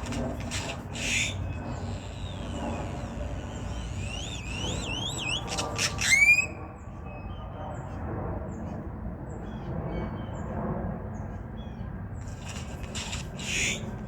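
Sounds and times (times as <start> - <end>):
grackle calling: 0.0 - 6.5, 12.2 - 14.0.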